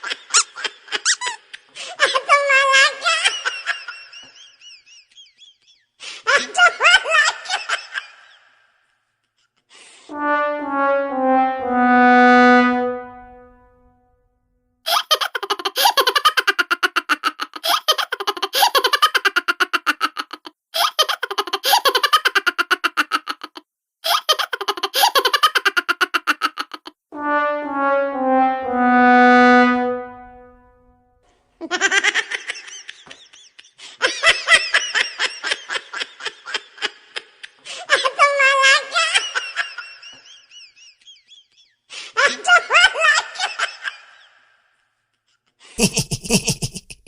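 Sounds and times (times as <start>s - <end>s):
sad trombone sting: 10.1s - 13.9s, 27.2s - 30.8s
rapid rhythmic laughter: 45.8s - 47.0s.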